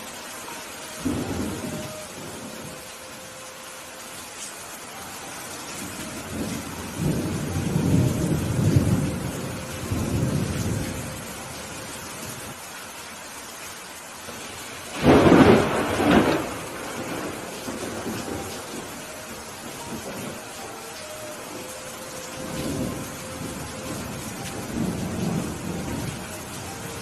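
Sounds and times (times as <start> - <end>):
steady rain: 0.0 - 27.0
rolling thunder: 5.8 - 12.5, 14.3 - 20.5, 22.2 - 27.0
sharp thunderclap: 14.9 - 18.4.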